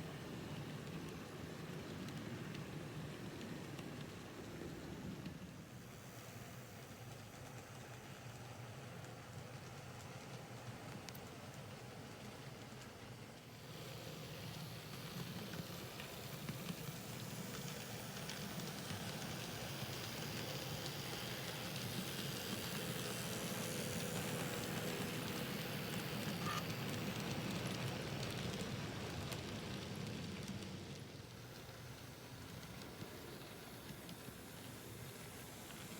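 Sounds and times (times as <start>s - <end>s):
small wheels rattling on rail joints: 7.4s - 35.9s
model train motor whirring: 10.6s - 35.9s.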